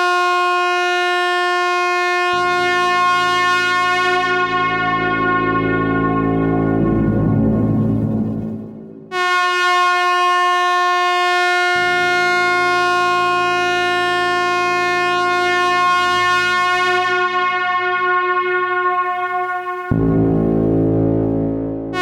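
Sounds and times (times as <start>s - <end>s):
truck air horn blast: 2.2s - 7.4s, 9.1s - 19.9s.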